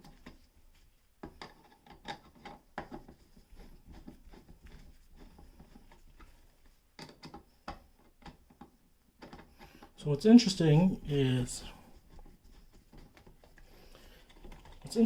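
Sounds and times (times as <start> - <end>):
small clicks and knocks: 1.2 - 10.0, 12.1 - 15.0.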